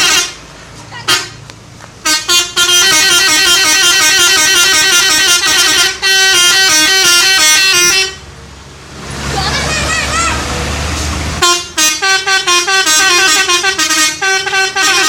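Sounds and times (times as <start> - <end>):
musical truck horn melody: 0.0 - 0.4, 1.0 - 1.4, 2.0 - 8.3, 11.4 - 15.0.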